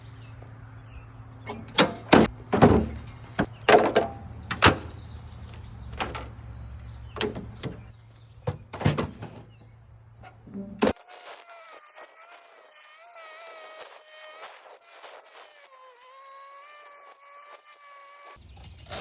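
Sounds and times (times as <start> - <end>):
low engine hum: 0.0 - 10.9
heavy knocks and thuds: 1.7 - 5.0, 7.1 - 9.6.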